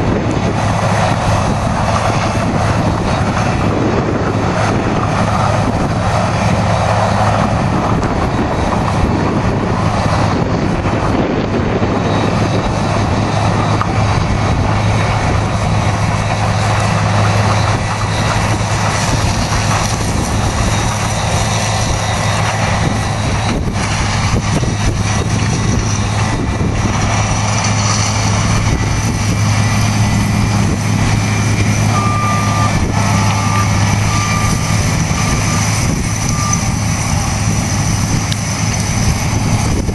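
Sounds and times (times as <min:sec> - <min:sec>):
diesel engine droning: 0:00.0 - 0:39.9
warning beeper: 0:31.2 - 0:37.3.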